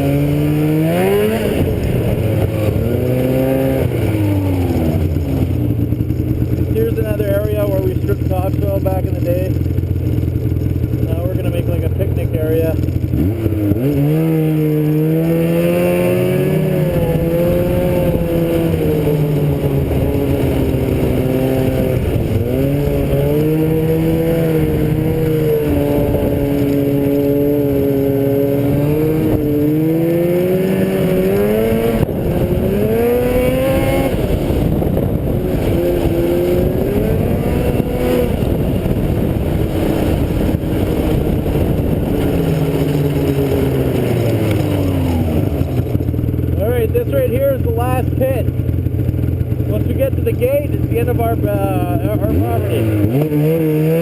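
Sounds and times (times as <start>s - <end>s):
vehicle engine revving: 0.0s - 54.0s.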